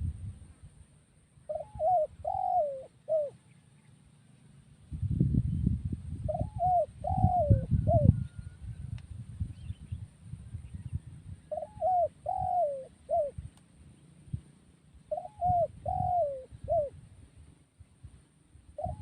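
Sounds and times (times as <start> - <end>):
dove cooing: 1.5 - 3.6, 6.3 - 8.6, 11.4 - 13.4, 15.0 - 17.0, 18.7 - 19.0.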